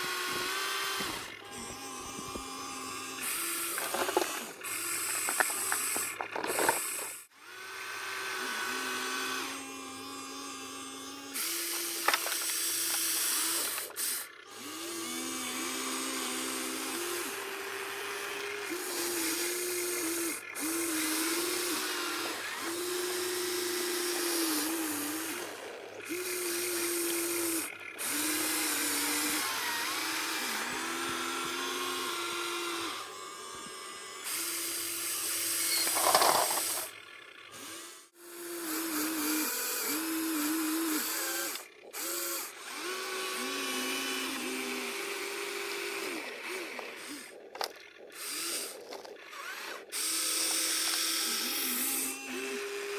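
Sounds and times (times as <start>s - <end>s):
small electric motors whining: 0.0s - 52.9s.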